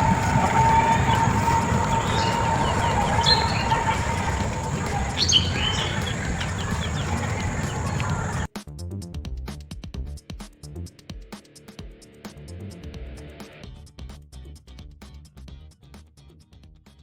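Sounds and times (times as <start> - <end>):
high bird chirps: 0.0 - 8.5
steady rushing background: 0.0 - 8.5.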